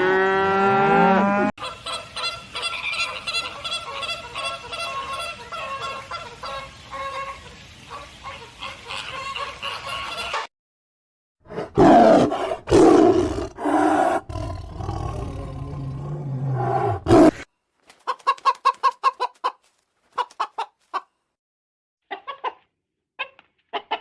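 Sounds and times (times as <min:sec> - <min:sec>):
chicken clucking: 0:18.0 - 0:21.1, 0:22.1 - 0:24.0.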